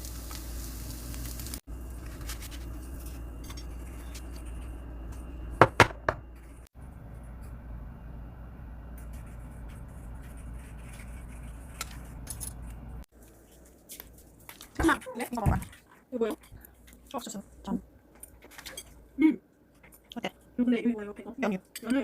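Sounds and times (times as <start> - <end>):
steady low hum: 0.6 - 14.5.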